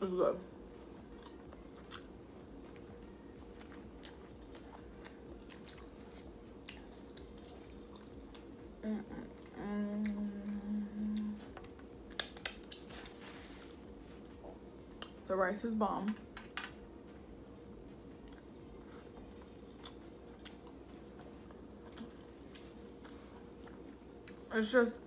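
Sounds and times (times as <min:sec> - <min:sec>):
chewing rice: 0:00.8 - 0:15.2, 0:18.0 - 0:24.5
person humming mmm: 0:08.8 - 0:11.6
wet mouth clicks and smacks: 0:12.1 - 0:12.9.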